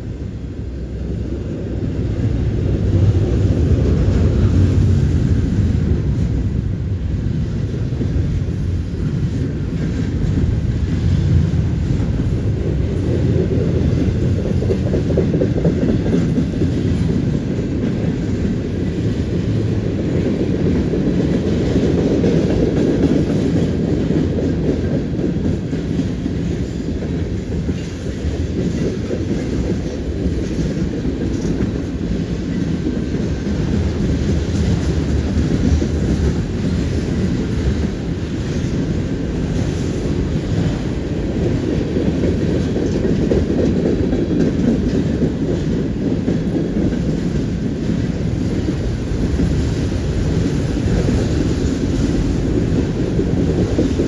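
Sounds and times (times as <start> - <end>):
freight train rumbling past: 0.0 - 54.0.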